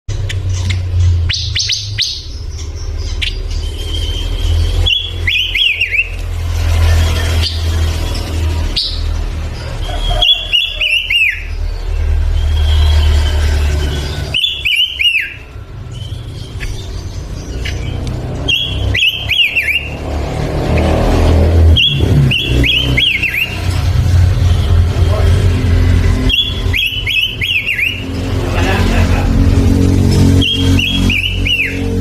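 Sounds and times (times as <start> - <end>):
songbird singing: 0.1 - 29.0, 29.7 - 32.0
steady low rumble: 20.0 - 32.0.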